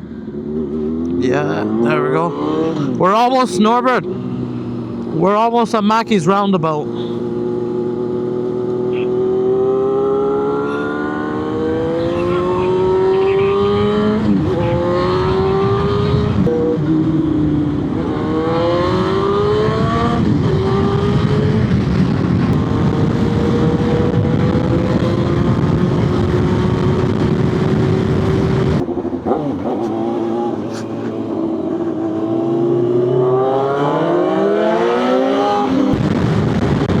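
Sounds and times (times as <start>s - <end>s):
motorcycle engine accelerating: 0.0s - 3.2s, 6.8s - 37.0s
wind noise on microphone: 11.2s - 33.0s, 35.6s - 37.0s.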